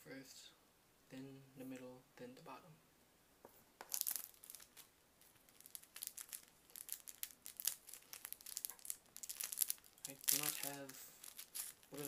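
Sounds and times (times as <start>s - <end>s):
vinyl skin crackling as peeled: 3.8s - 12.0s.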